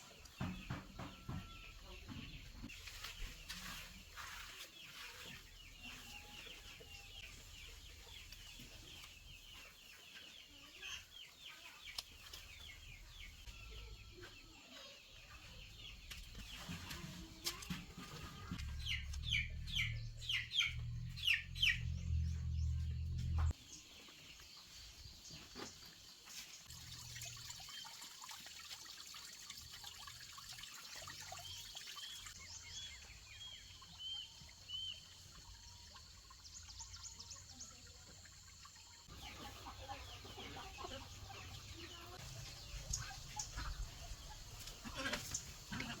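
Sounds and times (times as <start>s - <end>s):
chickens clucking: 0.0s - 26.5s, 33.0s - 46.0s
low rumbling noise: 18.8s - 23.5s.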